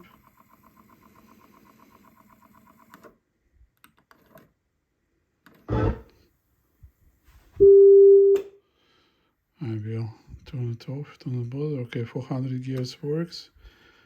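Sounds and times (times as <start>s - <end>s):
steady calibration test tone: 7.6s - 8.4s.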